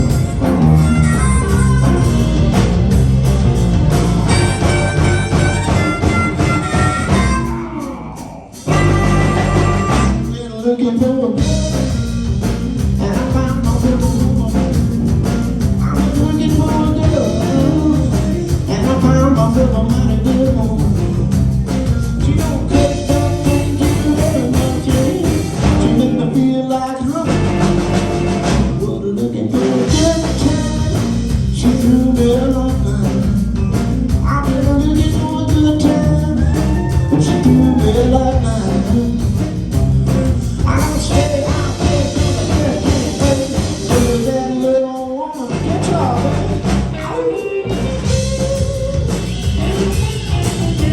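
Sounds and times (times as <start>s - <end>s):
blues band playing live: 0.0s - 50.9s.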